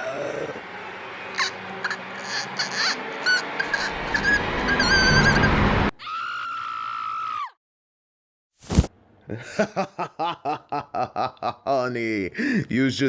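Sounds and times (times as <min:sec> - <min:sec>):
eerie noise swell: 0:00.0 - 0:05.9
person laughing: 0:09.3 - 0:11.8.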